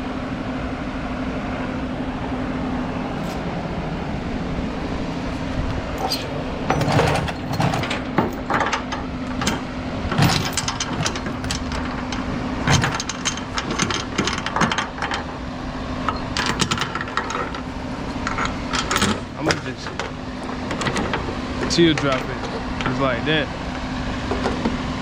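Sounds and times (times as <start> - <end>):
steady low hum: 0.0 - 25.0
metal chain clinking and rattling: 6.0 - 15.4, 16.1 - 23.0.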